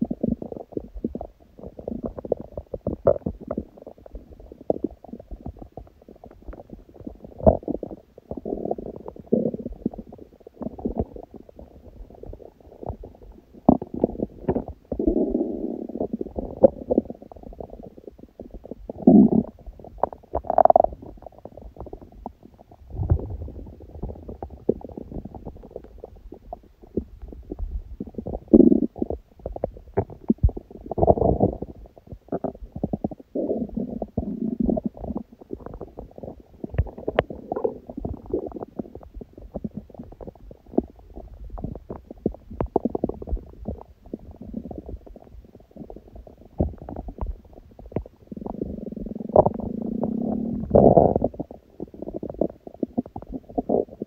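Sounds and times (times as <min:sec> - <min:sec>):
stomach growling: 0:00.0 - 0:54.0.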